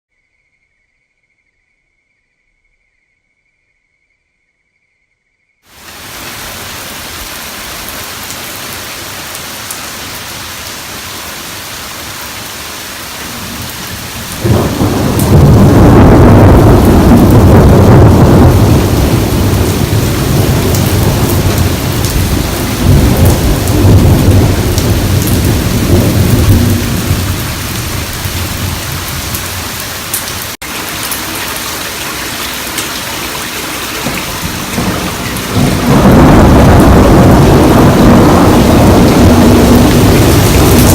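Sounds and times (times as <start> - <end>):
heavy rain pouring: 5.7 - 40.9
thunder rumbling: 13.2 - 30.5, 34.0 - 40.9.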